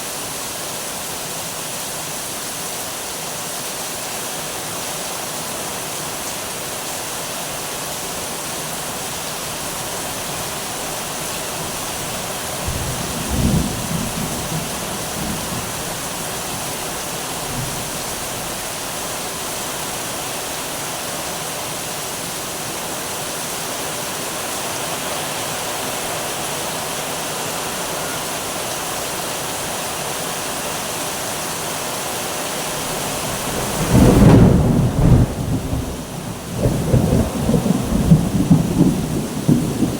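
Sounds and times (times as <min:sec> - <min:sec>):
heavy rain falling: 0:00.0 - 0:39.9
thunder rumbling: 0:11.6 - 0:18.8, 0:32.9 - 0:39.9.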